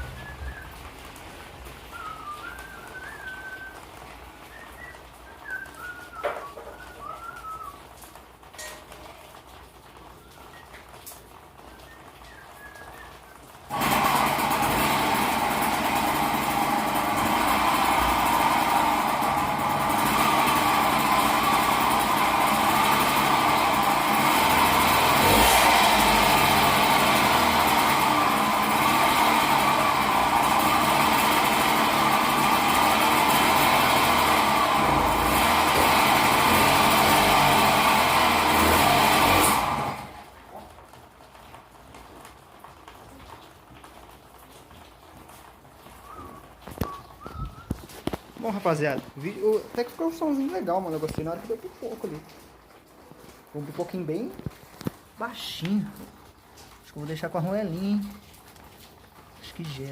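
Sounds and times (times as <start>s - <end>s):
melodic whistling: 0.0s - 0.9s, 1.9s - 7.8s, 11.7s - 13.5s, 46.0s - 47.9s
crackly moped engine: 0.0s - 59.9s.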